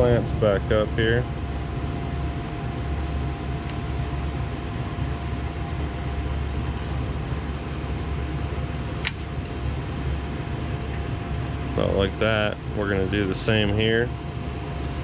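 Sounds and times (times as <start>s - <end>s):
low background hum: 0.0s - 15.0s
hose clamp click: 9.0s - 9.3s.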